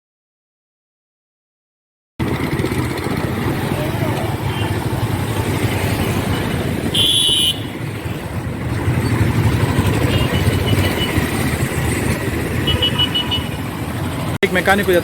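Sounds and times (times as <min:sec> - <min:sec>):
road traffic: 0:02.2 - 0:15.0
vehicle engine running: 0:02.2 - 0:15.0
car horn honking: 0:06.8 - 0:07.8, 0:09.8 - 0:11.5, 0:12.5 - 0:13.7.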